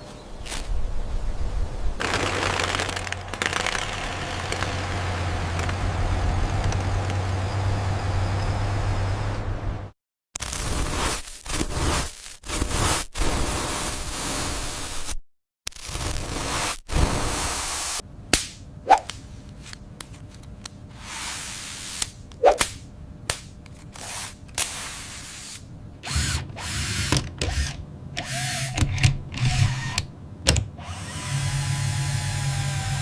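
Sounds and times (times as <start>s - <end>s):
sharp clicks and knocks: 2.0s - 7.4s
power tool running: 2.0s - 7.5s, 26.0s - 30.0s, 30.8s - 33.0s
low motor buzz: 2.0s - 9.9s, 30.8s - 33.0s.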